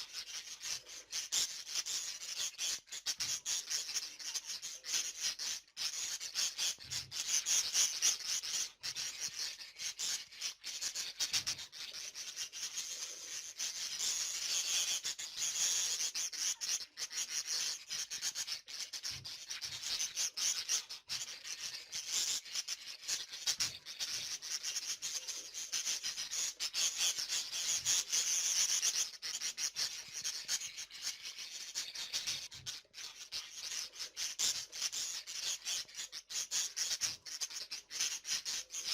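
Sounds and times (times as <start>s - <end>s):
budgerigars chattering and warbling: 0.0s - 38.9s.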